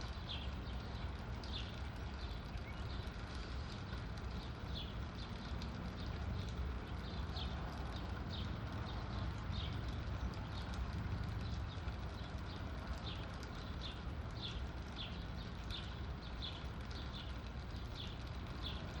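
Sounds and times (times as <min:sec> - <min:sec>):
small bird chirping: 0:00.0 - 0:05.4
faint rapid ticking: 0:00.0 - 0:19.0.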